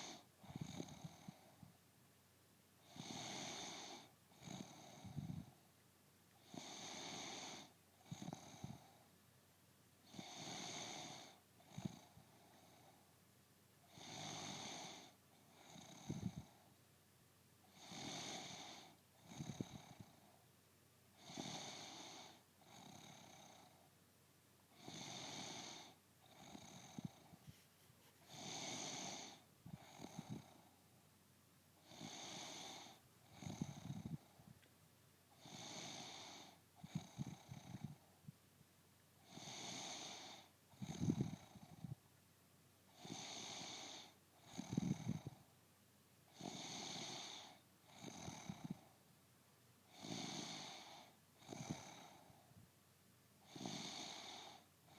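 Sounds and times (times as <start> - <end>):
woman snoring: 2.9 - 5.5, 14.0 - 16.4, 17.8 - 20.0, 21.3 - 23.6, 24.8 - 27.2, 28.3 - 30.6, 31.9 - 34.2, 35.4 - 38.0, 39.3 - 41.9, 43.0 - 45.4, 46.4 - 48.8, 50.0 - 52.2, 53.5 - 54.6.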